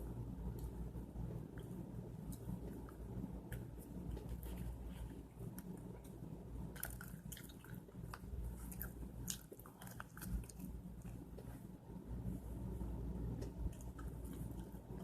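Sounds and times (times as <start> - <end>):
low hum: 0.0 - 15.0
person chewing food: 6.7 - 11.5.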